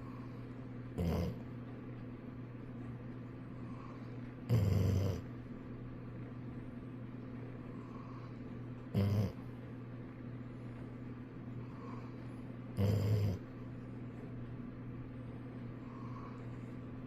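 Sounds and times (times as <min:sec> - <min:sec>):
steady low hum: 0:00.0 - 0:17.0
dog snoring: 0:01.0 - 0:01.4, 0:03.7 - 0:05.3, 0:08.9 - 0:09.5, 0:12.8 - 0:13.5.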